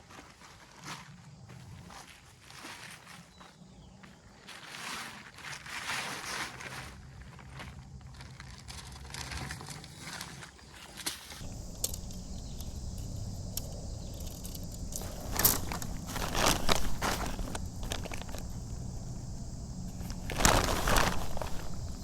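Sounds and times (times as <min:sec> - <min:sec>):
footsteps and rustling: 0:00.0 - 0:22.0
crunching steps: 0:11.4 - 0:22.0
steady low rumble: 0:11.4 - 0:22.0.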